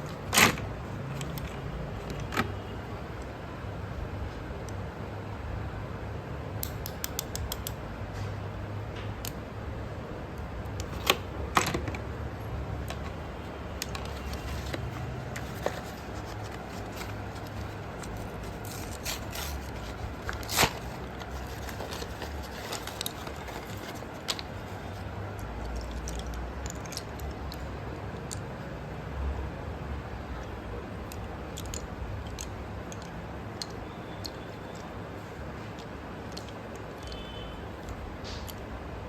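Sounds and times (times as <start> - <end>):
slate pencils clicking and scraping: 0.0 - 3.3, 10.4 - 28.5, 30.4 - 38.7.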